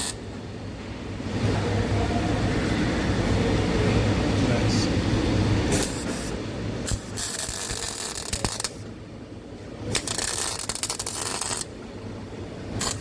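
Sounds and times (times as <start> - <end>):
rapid mechanical clicking of tool: 6.9 - 8.8, 9.9 - 11.7, 12.8 - 13.0.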